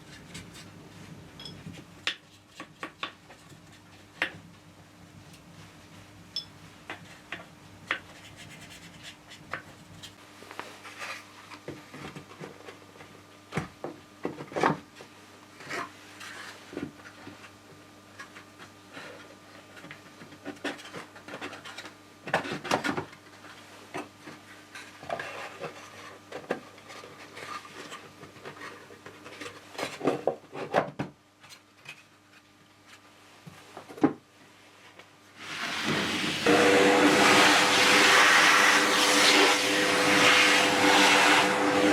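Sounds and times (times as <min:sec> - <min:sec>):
rubbing and scraping objects: 0:08.1 - 0:12.9, 0:19.0 - 0:30.8, 0:34.6 - 0:41.9.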